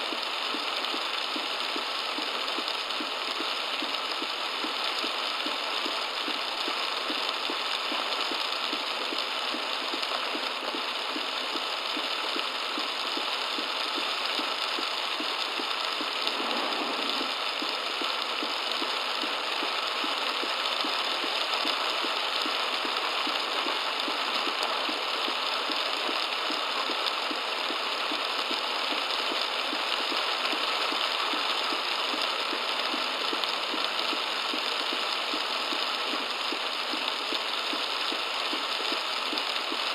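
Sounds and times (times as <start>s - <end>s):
heavy rain on car roof: 0.0s - 39.9s.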